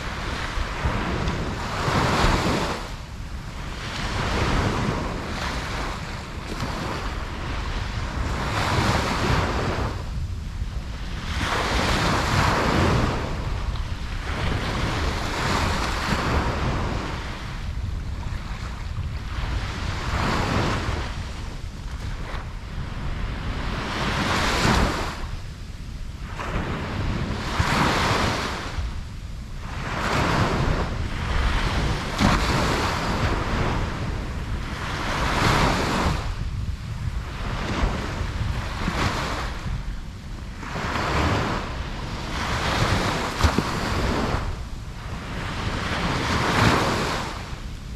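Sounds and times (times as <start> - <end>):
ocean waves breaking: 0.0 - 47.9
wind buffeting microphone: 0.0 - 47.9.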